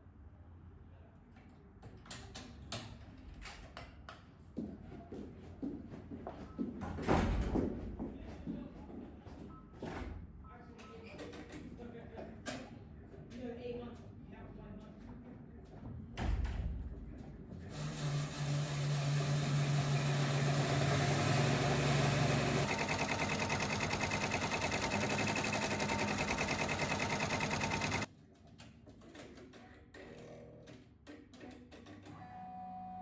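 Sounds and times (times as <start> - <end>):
small motorised machine running: 17.7 - 28.1.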